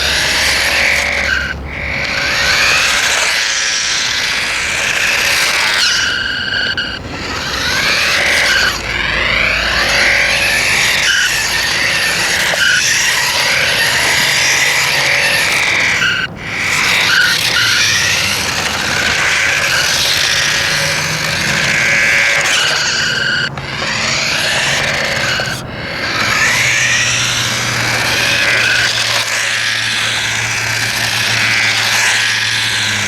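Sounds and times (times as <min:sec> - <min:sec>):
toy electronic squealing tones: 0:00.0 - 0:33.0.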